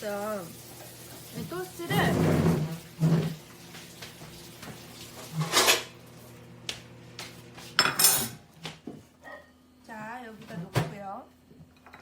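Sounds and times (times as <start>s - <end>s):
dishes and utensils clattering: 5.2s - 6.0s, 7.8s - 8.4s.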